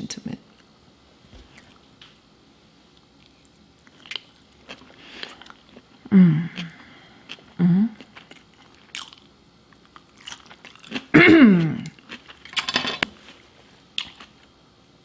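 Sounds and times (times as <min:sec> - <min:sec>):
people chewing and biting food: 0:03.0 - 0:14.6.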